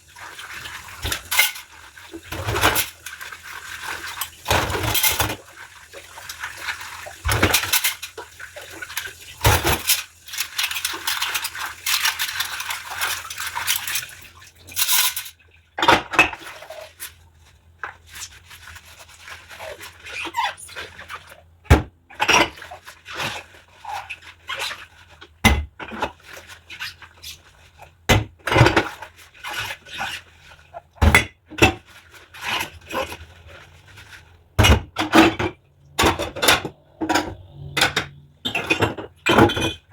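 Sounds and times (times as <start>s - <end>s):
water running and splashing: 0.0s - 15.4s, 16.4s - 21.5s, 31.8s - 34.6s
scrubbing dishes: 0.0s - 39.9s.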